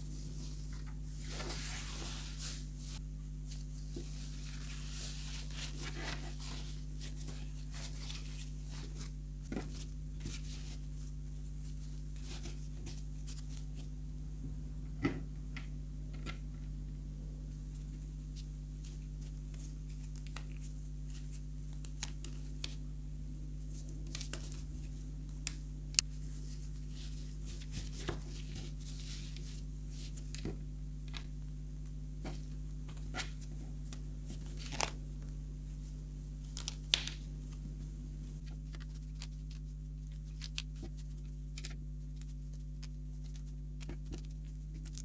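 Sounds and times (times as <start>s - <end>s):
steady low hum: 0.0s - 38.8s
plastic and paper clicks and rustles: 32.2s - 45.0s.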